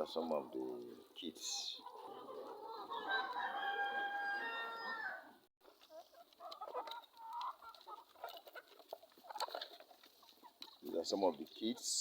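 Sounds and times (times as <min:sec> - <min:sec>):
chickens clucking: 0:00.1 - 0:12.0
rooster crowing: 0:03.0 - 0:05.4.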